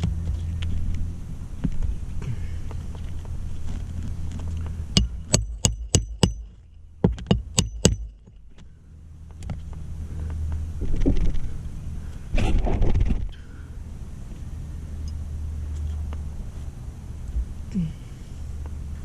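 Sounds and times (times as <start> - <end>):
low steady rumble: 0.0 - 19.0
sharp metallic clicks: 5.0 - 8.4.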